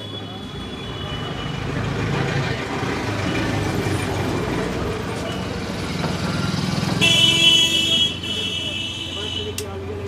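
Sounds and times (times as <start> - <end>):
vehicle engine rumbling: 0.0 - 8.6
vehicle horn honking: 7.0 - 9.6.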